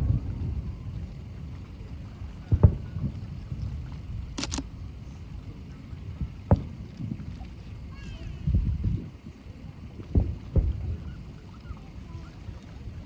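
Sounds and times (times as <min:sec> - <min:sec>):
fireworks booming: 0:00.0 - 0:05.3, 0:06.0 - 0:07.3, 0:10.0 - 0:11.3
steady low rumble: 0:00.0 - 0:13.0
sharp clicks: 0:04.4 - 0:04.7.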